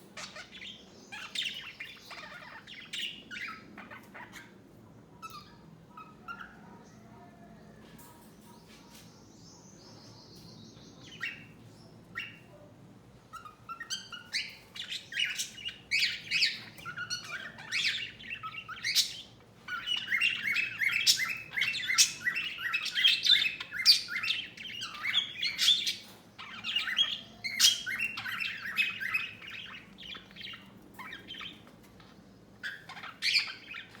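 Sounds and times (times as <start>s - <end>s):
budgerigar chirping and warbling: 0.2s - 4.6s, 5.2s - 6.9s, 13.3s - 31.7s, 32.6s - 34.0s.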